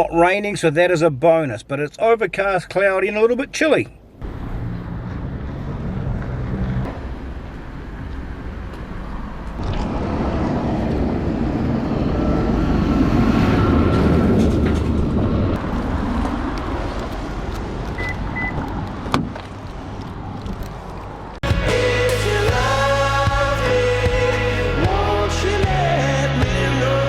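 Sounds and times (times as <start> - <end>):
vehicle passing: 4.2 - 25.3.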